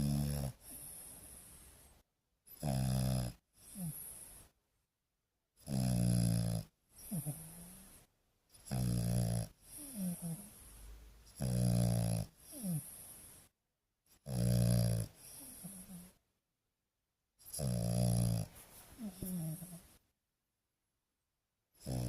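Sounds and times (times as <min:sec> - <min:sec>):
dog snoring: 0:00.0 - 0:01.9, 0:02.5 - 0:04.5, 0:05.6 - 0:10.7, 0:11.3 - 0:13.5, 0:14.1 - 0:16.2, 0:17.4 - 0:19.9, 0:21.8 - 0:22.0.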